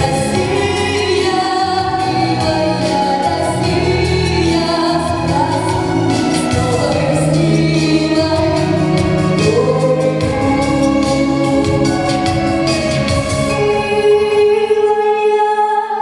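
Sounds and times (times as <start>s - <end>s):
steady bass accompaniment: 0.0s - 15.0s.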